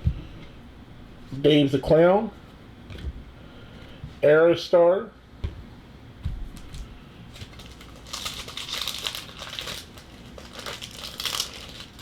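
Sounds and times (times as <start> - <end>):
plastic wrapper crinkling: 7.3 - 12.0.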